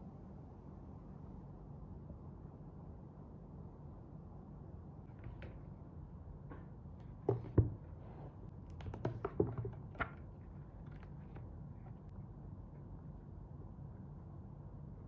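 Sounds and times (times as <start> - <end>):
short knocks and taps: 7.3 - 7.8.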